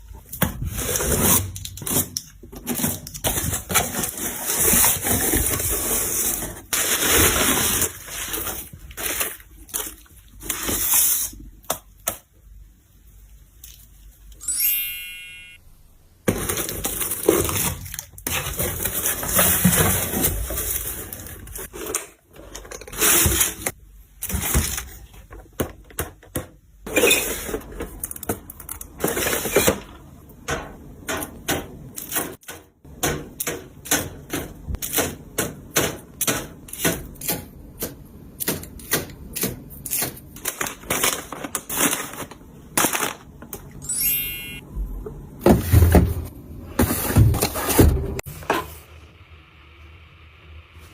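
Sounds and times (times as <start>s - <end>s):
short ringing tone: 14.4s - 15.7s, 43.9s - 44.7s
rustling and knocking of containers: 16.2s - 37.2s, 44.9s - 48.8s.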